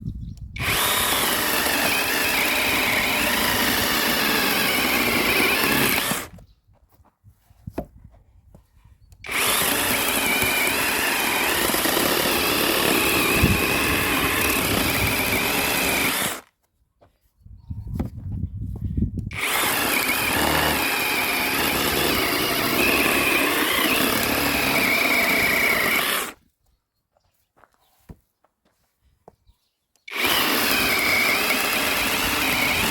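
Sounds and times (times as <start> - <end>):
electric chainsaw cutting wood: 0.6 - 6.3, 9.2 - 16.5, 19.3 - 26.4, 30.1 - 32.9.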